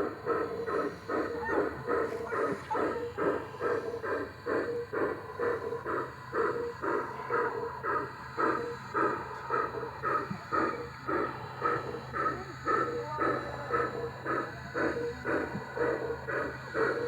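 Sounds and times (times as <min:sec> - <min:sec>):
model steam locomotive chuffing: 0:00.0 - 0:17.0
motor and gearing hum: 0:00.0 - 0:17.0.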